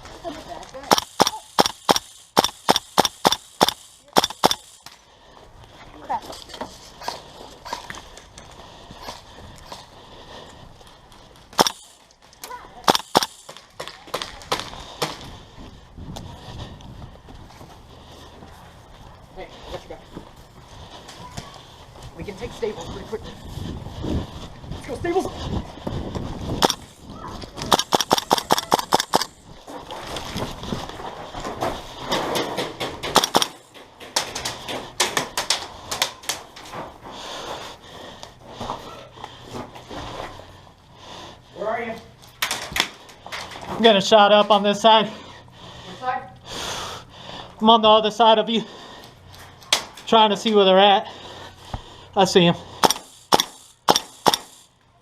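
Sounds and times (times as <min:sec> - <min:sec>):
airsoft gun shots: 0:00.9 - 0:04.7, 0:12.9 - 0:13.6, 0:27.6 - 0:29.3, 0:33.0 - 0:33.6, 0:52.8 - 0:54.6.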